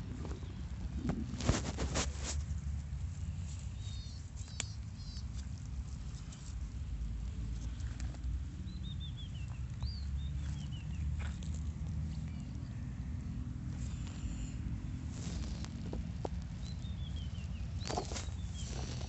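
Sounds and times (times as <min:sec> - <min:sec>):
horse stomach rumbling: 0:00.0 - 0:02.2
small bird twittering: 0:03.8 - 0:05.4, 0:16.6 - 0:19.0.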